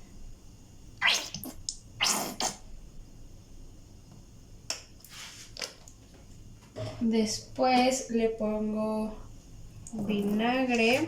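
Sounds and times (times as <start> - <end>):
squeeze bottle squirting: 1.0 - 2.6.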